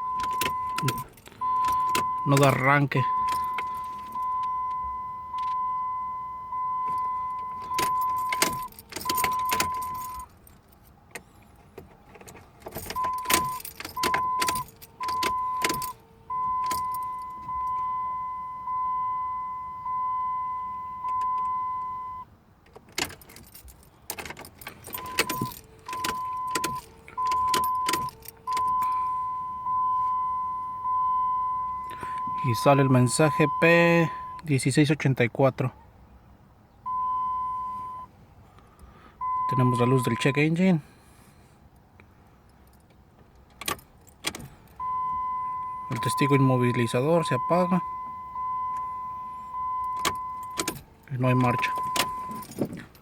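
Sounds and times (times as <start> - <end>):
dashboard warning chime: 0.0 - 10.3, 12.8 - 22.3, 24.6 - 34.7, 36.8 - 38.1, 39.2 - 40.8, 43.7 - 53.0
key ring jangling and clicking: 0.2 - 2.5, 6.9 - 10.9, 12.7 - 16.0, 23.0 - 29.0, 49.8 - 53.0.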